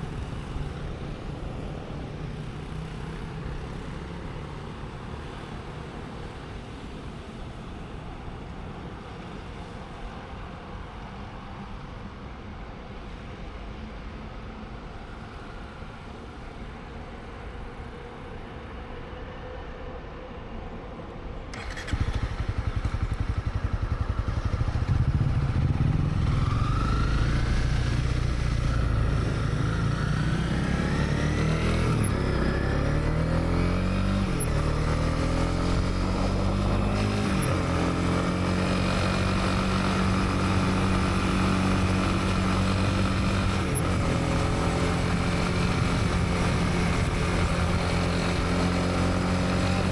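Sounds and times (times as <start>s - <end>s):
motorcycle engine accelerating: 21.5s - 49.9s.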